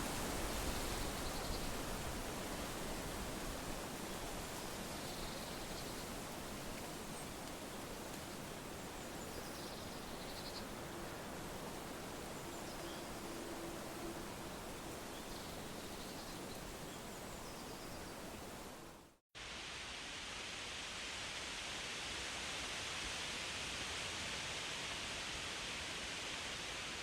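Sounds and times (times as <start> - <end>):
wind rustling leaves: 0.0 - 27.0.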